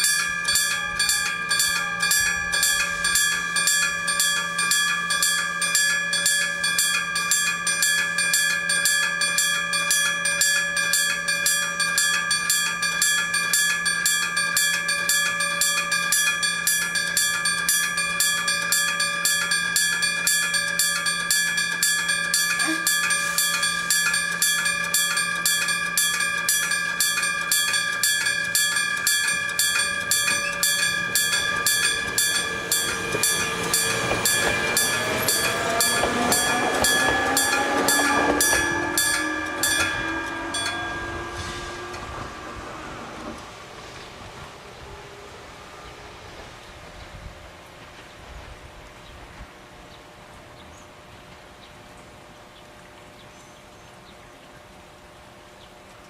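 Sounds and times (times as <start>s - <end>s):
level crossing bell ringing: 0.0s - 43.5s.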